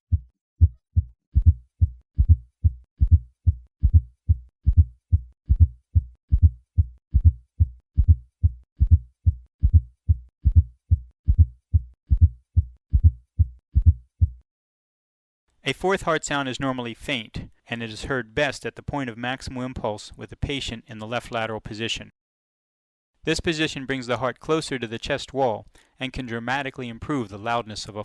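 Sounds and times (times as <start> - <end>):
low-pitched heart thumps: 0.1 - 14.4.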